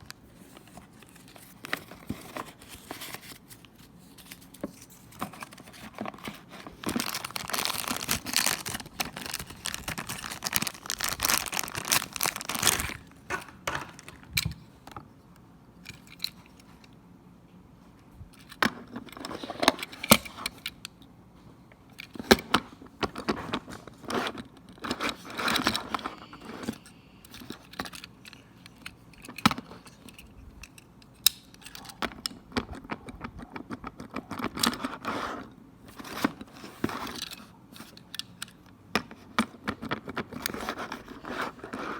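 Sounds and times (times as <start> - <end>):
cardboard and plastic rustling: 0.0 - 15.0, 39.1 - 41.9.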